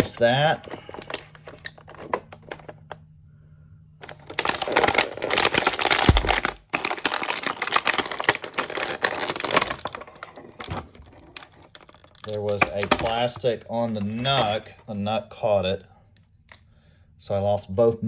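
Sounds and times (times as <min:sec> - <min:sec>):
plastic packaging crinkling: 0:00.0 - 0:02.9, 0:04.0 - 0:14.8.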